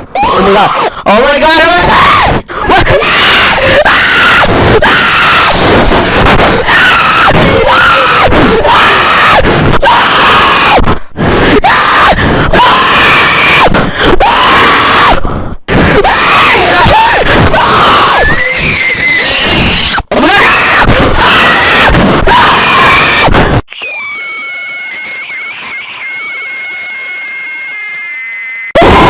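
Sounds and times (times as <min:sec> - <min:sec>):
person screaming: 0:00.1 - 0:00.9, 0:01.6 - 0:10.8, 0:11.4 - 0:15.2, 0:15.9 - 0:23.3, 0:28.8 - 0:29.0.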